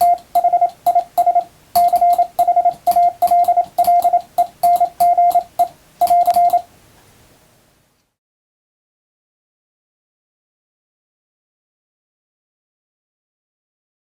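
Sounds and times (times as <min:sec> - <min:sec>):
keying clicks: 0:00.0 - 0:06.6
morse code tone beeping: 0:00.0 - 0:06.7.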